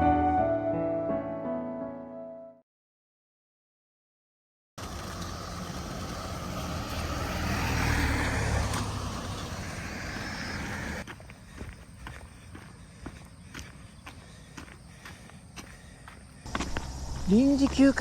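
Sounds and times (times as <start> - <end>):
car passing by: 4.8 - 11.0.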